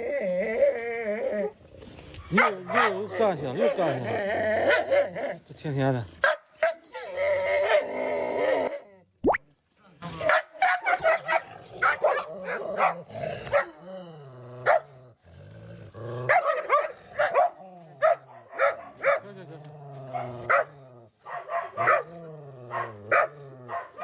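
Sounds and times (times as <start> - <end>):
low drawn-out dog howls: 0.0 - 1.6, 6.7 - 9.0, 12.1 - 14.9, 16.2 - 24.0
dogs barking: 2.3 - 5.4, 6.2 - 6.9, 10.2 - 13.8, 14.6 - 15.0, 16.2 - 19.4, 20.1 - 24.0.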